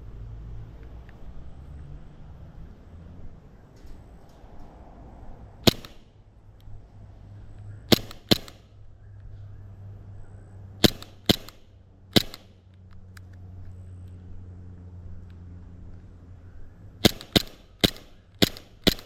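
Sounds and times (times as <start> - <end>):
gel blaster pistol shots: 5.6 - 6.1, 7.9 - 8.7, 10.8 - 12.5, 17.0 - 19.0.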